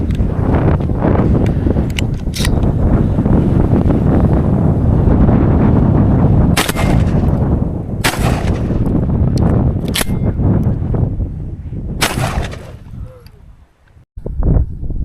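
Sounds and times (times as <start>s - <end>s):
wind rumble on microphone: 0.0s - 15.0s
airsoft shotgun shots: 6.6s - 7.4s, 8.0s - 8.8s, 9.9s - 10.3s, 12.0s - 12.8s.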